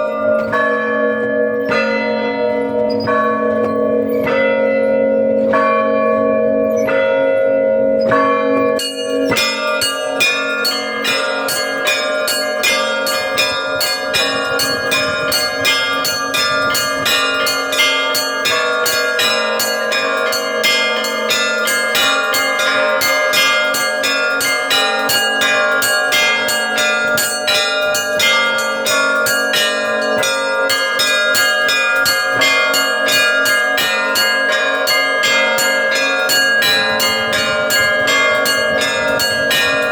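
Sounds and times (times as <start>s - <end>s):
large church bells humming: 0.0s - 39.9s
small bells pealing fast: 10.6s - 39.9s.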